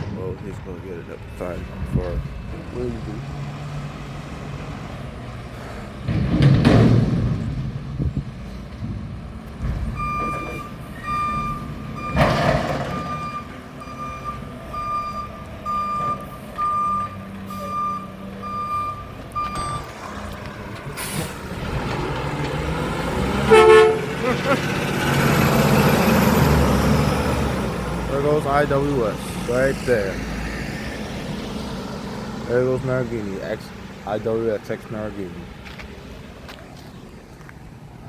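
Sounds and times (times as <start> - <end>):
diesel engine running: 0.0 - 38.0
backup alarm beeping: 10.0 - 20.0.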